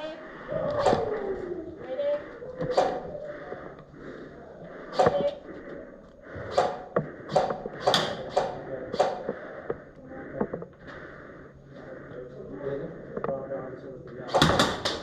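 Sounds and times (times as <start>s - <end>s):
sharp clacks: 14.3s - 15.0s.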